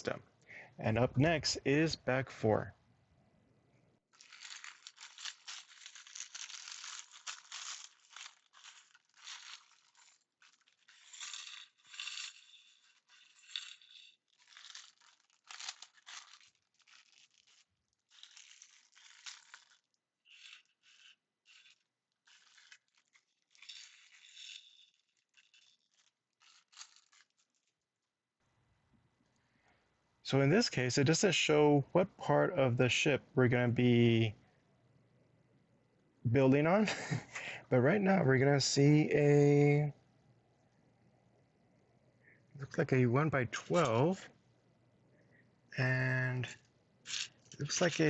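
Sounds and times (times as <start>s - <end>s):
plastic bag crinkling and tearing: 4.1s - 11.8s, 14.3s - 19.8s.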